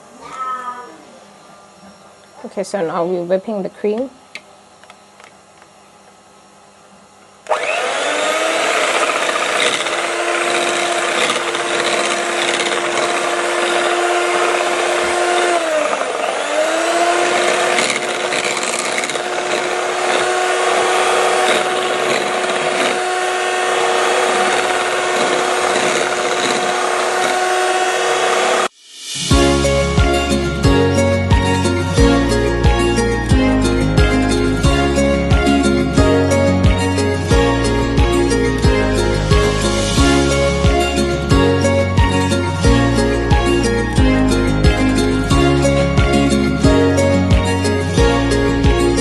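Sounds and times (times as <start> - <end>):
electric mixer whining: 7.4 - 28.7, 29.3 - 49.0.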